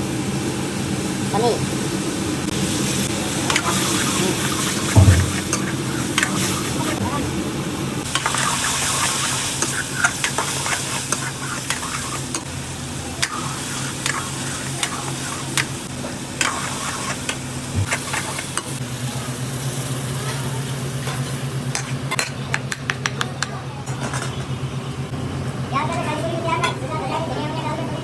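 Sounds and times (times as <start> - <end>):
steady low hum: 0.0 - 28.0
gravy sizzling in a pan: 0.3 - 22.5.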